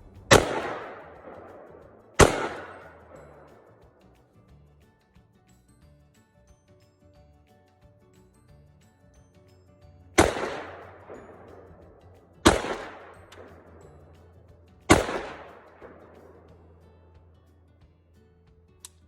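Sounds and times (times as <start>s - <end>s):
rifle shots echoing: 0.0s - 3.7s, 10.2s - 13.8s, 14.9s - 16.5s
faint background music: 0.0s - 19.0s.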